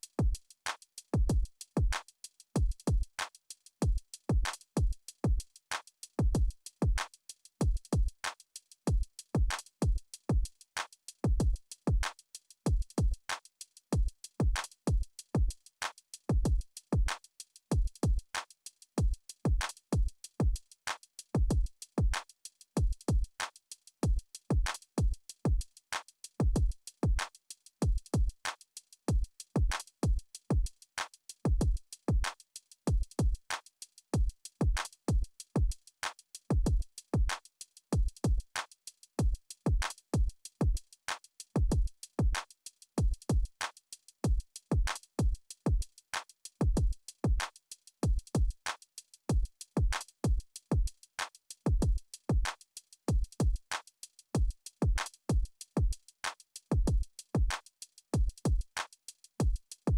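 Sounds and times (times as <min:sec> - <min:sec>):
hi-hat ticks: 0:00.0 - 0:59.9
deep kick drums: 0:51.7 - 0:52.0.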